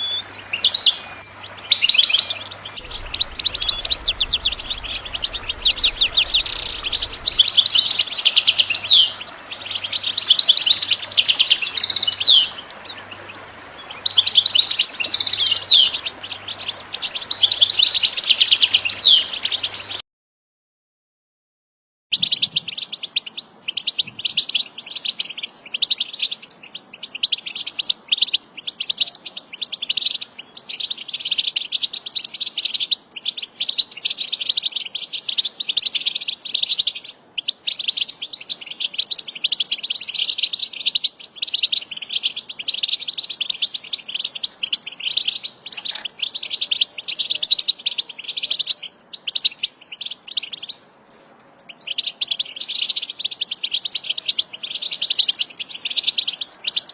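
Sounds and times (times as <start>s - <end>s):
goldfinch twittering song: 0.0s - 20.0s.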